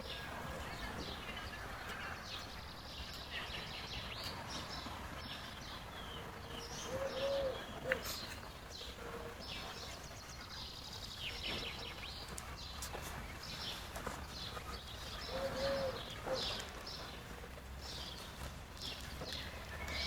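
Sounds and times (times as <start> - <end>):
small birds chirping: 0.0 - 20.0
low cooing call: 6.2 - 10.0, 15.1 - 16.7.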